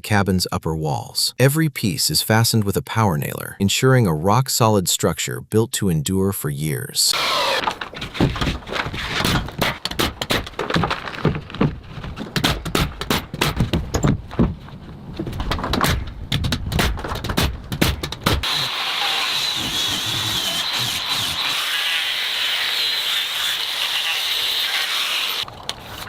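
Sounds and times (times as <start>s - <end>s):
knocks and clacks of wooden panels: 7.7s - 18.4s.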